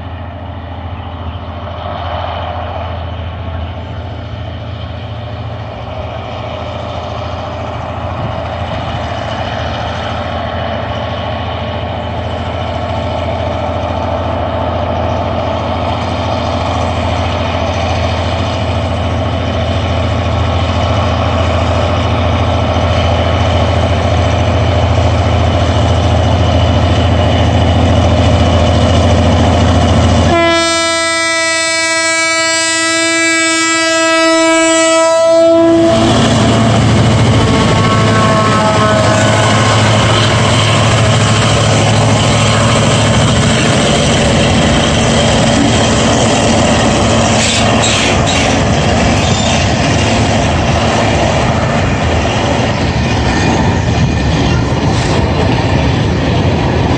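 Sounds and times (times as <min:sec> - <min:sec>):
diesel locomotive under load: 0:00.0 - 0:56.9
train air horn blast: 0:30.3 - 0:36.4, 0:37.5 - 0:41.0.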